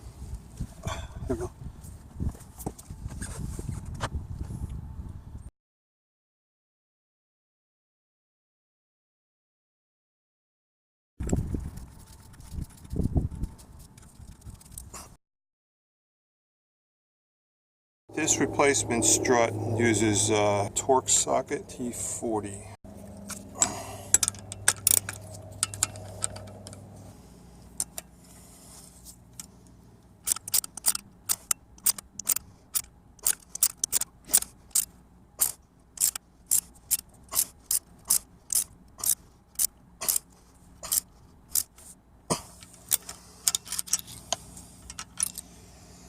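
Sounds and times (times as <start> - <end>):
ratchet wrench clicking: 24.1 - 26.7, 30.2 - 40.2, 40.9 - 41.7, 42.6 - 45.5
metal clicks and knocks: 24.1 - 26.8, 30.2 - 37.1.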